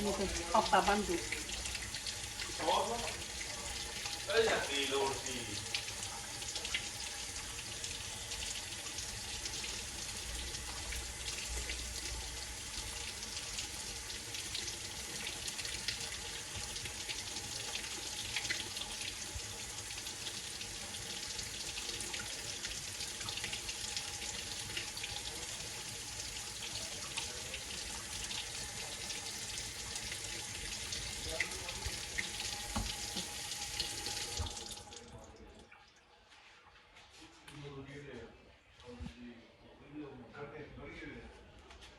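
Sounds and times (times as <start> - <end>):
tap running into sink: 31.2 - 35.1.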